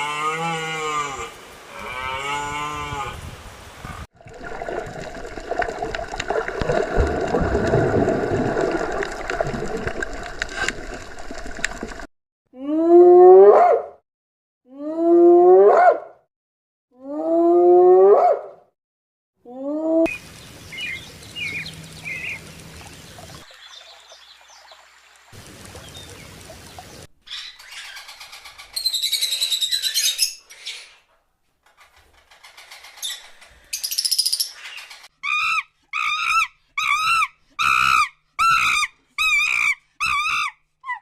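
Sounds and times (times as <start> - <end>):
bird calls and chirps: 20.1 - 25.0, 25.7 - 31.0, 31.8 - 35.4.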